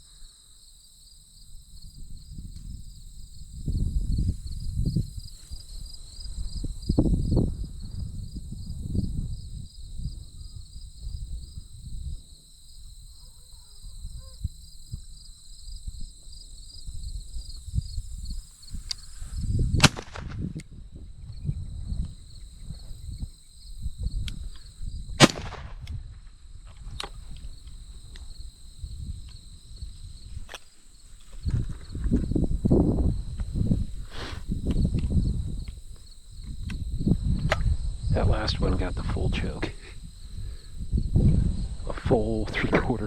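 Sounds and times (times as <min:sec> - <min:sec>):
insects buzzing: 0:00.0 - 0:43.0
shotgun shots: 0:19.8 - 0:20.4, 0:25.2 - 0:25.9.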